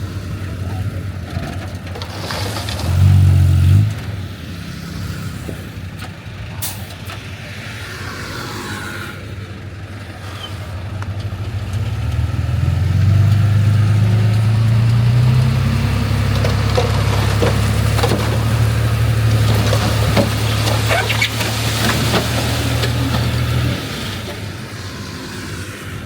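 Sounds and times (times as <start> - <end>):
heavy diesel engine running hard: 0.0 - 26.0
clanks and knocks: 16.2 - 23.7.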